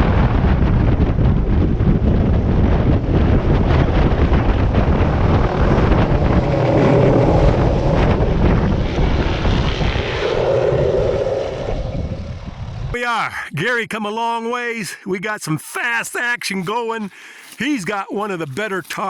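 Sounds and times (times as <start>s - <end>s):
wind buffeting microphone: 0.0s - 13.0s
helicopter rotor and engine: 1.6s - 13.0s.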